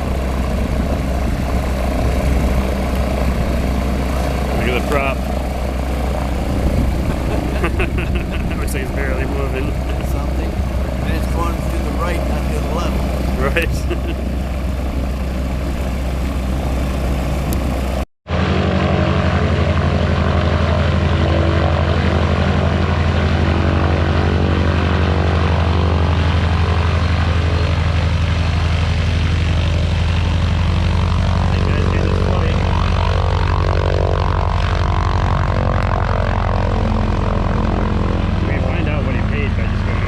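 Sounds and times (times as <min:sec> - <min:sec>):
radial piston engines droning: 0:00.0 - 0:18.0.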